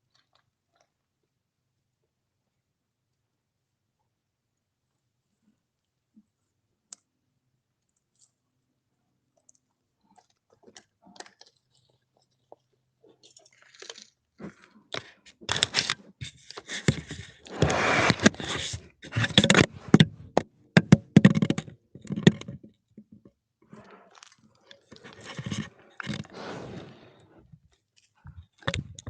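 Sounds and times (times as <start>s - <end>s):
crunching and scraping: 10.1s - 22.7s, 23.6s - 29.0s
bear clawing at camera: 15.0s - 22.5s, 23.7s - 27.5s.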